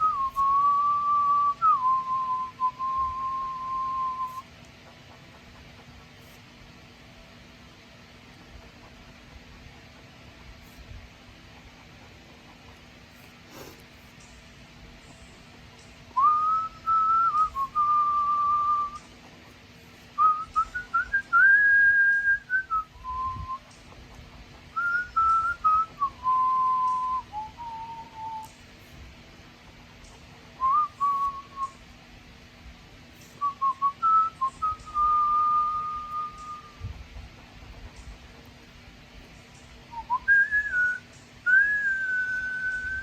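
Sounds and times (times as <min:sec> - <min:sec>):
person whistling a tune: 0:00.0 - 0:04.5, 0:16.2 - 0:19.1, 0:20.2 - 0:23.6, 0:24.8 - 0:28.5, 0:30.6 - 0:31.8, 0:33.4 - 0:36.8, 0:39.9 - 0:43.0.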